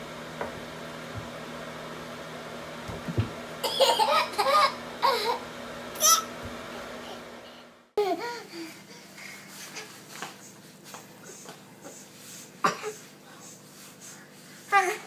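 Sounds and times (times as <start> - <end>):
low room hum: 0.0 - 15.0
soft thumps: 2.9 - 3.4
baby laughing: 3.6 - 5.4.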